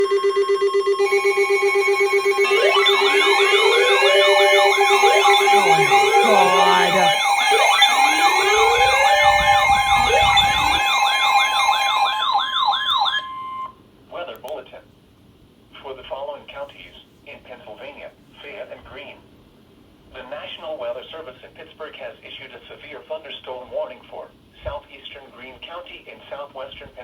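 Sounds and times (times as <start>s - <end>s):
sirens sweeping: 1.0s - 13.7s.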